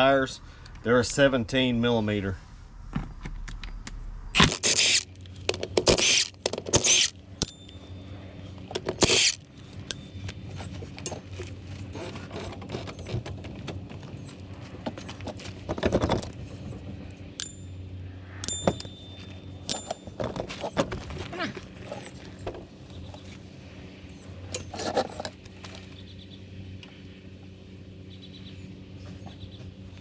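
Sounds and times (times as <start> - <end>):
metal clicks and clinks: 4.4 - 13.2, 14.1 - 23.2, 24.5 - 25.5.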